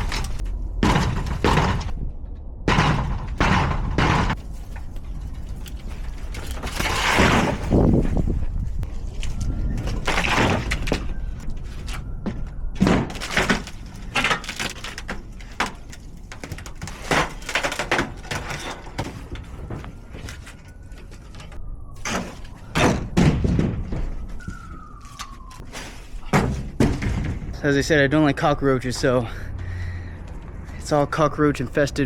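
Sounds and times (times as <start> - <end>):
metal clanks and thuds: 0.0 - 4.9, 5.5 - 8.4, 9.8 - 24.8, 25.4 - 27.8.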